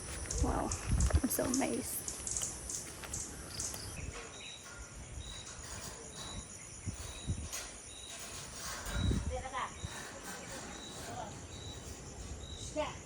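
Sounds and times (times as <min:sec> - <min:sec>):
insects buzzing: 0:00.0 - 0:13.0.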